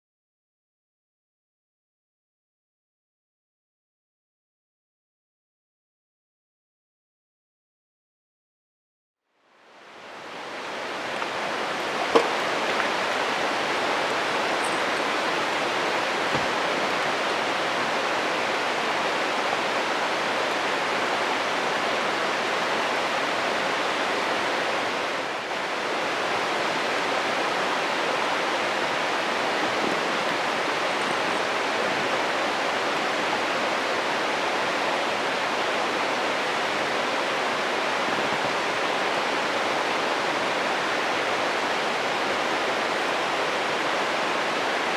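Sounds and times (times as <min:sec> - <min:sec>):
stream rushing over rocks: 0:09.5 - 0:44.9.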